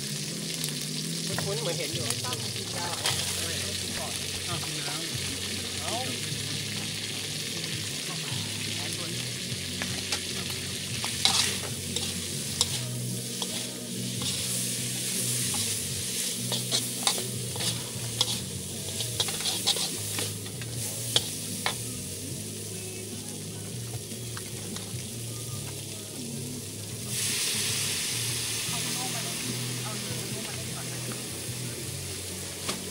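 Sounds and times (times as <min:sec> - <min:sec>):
vegetables sizzling in a pan: 0:00.0 - 0:32.9
spatula scraping a pan: 0:11.0 - 0:21.8.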